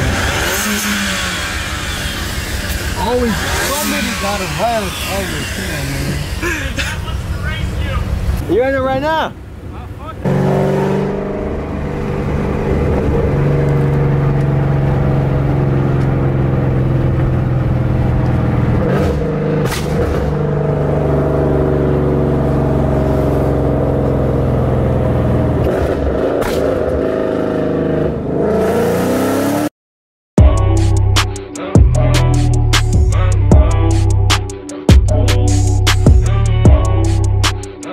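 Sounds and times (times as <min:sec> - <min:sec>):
loud car exhaust while driving: 0:00.0 - 0:08.5, 0:10.2 - 0:29.7
exhaust cracks: 0:10.2 - 0:27.1
music: 0:30.4 - 0:37.9.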